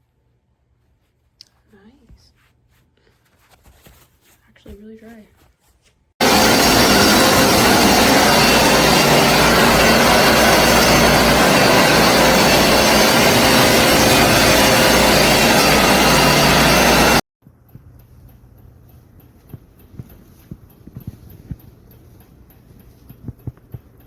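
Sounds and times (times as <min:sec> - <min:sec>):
carpet cleaner running: 0:06.2 - 0:17.2.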